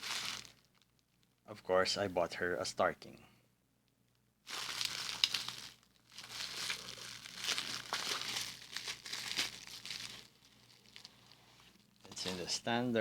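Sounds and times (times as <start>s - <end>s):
packaging crinkling: 0.0s - 1.2s, 4.5s - 12.5s.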